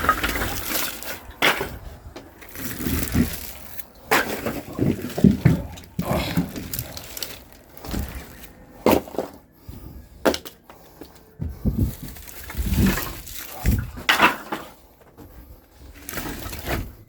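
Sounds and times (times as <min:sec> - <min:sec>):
firewood logs thumping onto pile: 0:00.0 - 0:09.4, 0:11.4 - 0:14.8.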